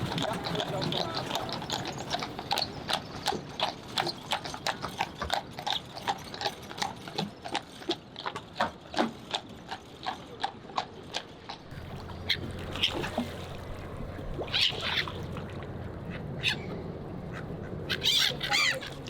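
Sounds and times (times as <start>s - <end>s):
horse hooves clip-clopping on road: 0.0s - 13.7s.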